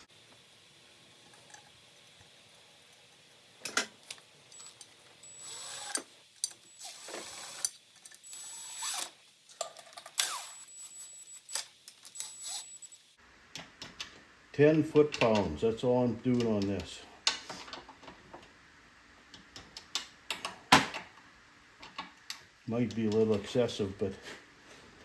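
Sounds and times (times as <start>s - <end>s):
power tool bursts: 4.6s - 9.2s, 10.1s - 13.0s.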